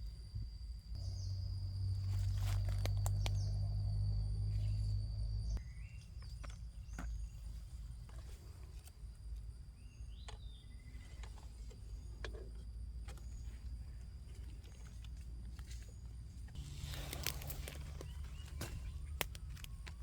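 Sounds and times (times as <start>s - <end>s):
high insect whine: 0.0s - 5.9s, 16.0s - 20.0s
leaf litter crackling: 2.0s - 3.6s, 16.5s - 20.0s.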